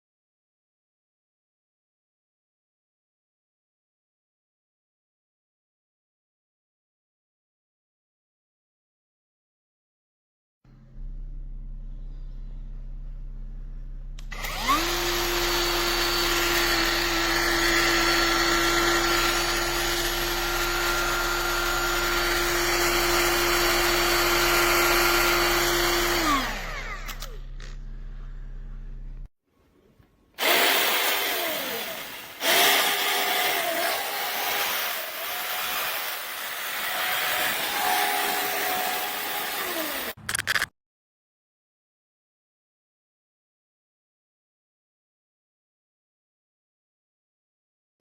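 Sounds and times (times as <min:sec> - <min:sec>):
electric chainsaw motor whine: 0:14.2 - 0:27.9, 0:30.4 - 0:40.2.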